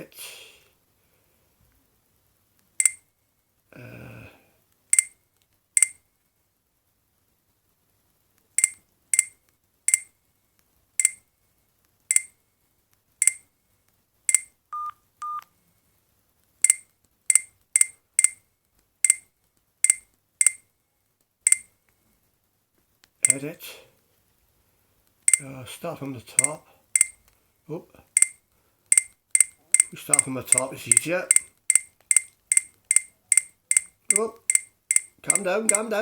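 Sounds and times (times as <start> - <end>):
low steady beeps: 2.8 - 3.0, 4.9 - 5.2, 8.6 - 10.1, 11.0 - 11.2, 12.1 - 12.4, 14.3 - 15.5, 16.6 - 18.4, 19.0 - 20.6, 21.5 - 21.7, 25.3 - 25.5, 26.4 - 27.2, 28.1 - 36.0
phone keypad beeps: 2.8 - 3.0, 8.6 - 9.3, 14.3 - 15.5, 28.2 - 35.9.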